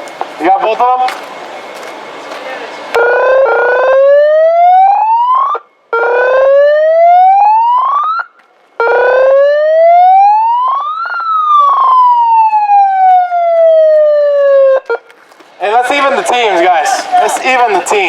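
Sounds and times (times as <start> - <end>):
siren wailing: 2.2 - 15.1.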